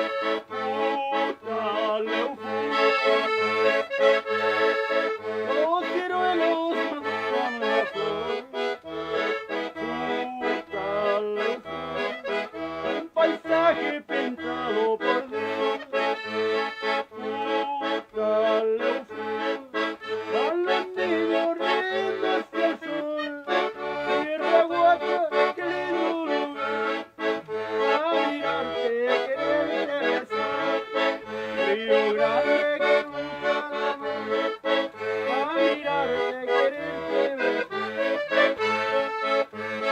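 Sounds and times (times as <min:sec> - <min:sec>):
accordion music with bass beat: 0:00.0 - 0:39.9.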